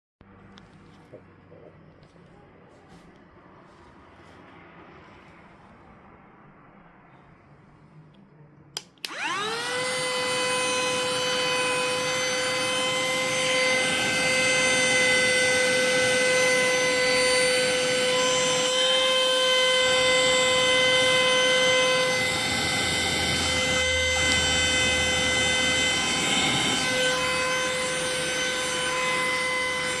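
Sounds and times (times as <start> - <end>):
vacuum cleaner switch click: 8.8 - 9.3
vacuum cleaner motor whine: 9.0 - 30.0.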